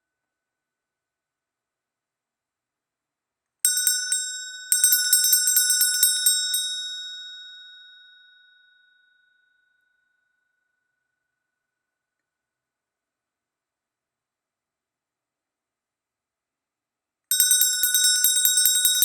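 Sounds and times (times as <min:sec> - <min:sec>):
hand bell ringing: 0:03.7 - 0:08.8, 0:17.3 - 0:19.0.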